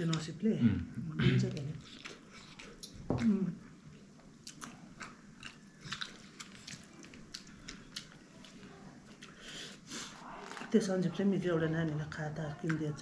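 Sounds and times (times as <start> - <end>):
person chewing food: 1.8 - 9.4.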